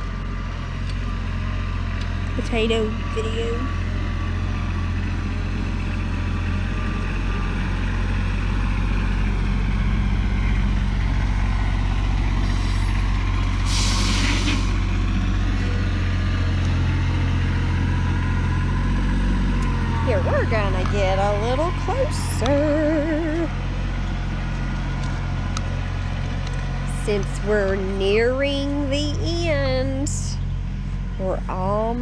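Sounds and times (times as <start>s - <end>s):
tractor engine running: 0.0s - 32.0s
short hiss: 12.4s - 13.0s, 13.6s - 14.8s.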